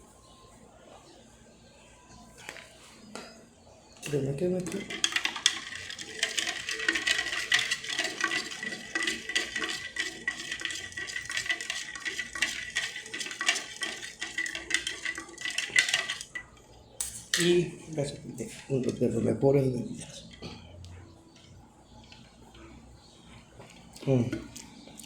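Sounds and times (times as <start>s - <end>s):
spoon clinking in a cup: 4.0s - 17.6s.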